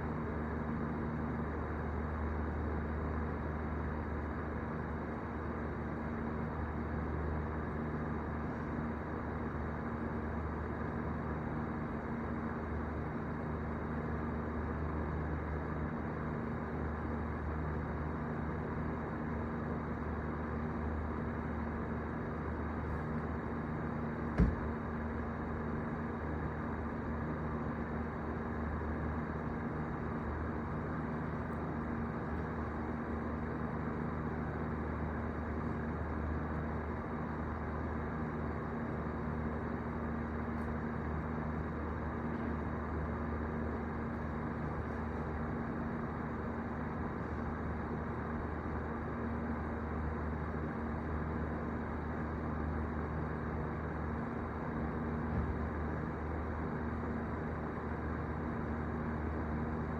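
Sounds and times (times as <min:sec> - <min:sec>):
sharp knock: 0:24.4 - 0:24.7.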